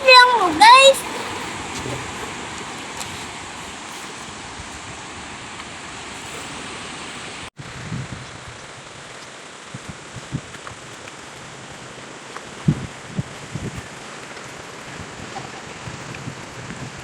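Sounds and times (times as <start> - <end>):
sea surf: 0.0 - 7.5
wind: 0.0 - 17.0.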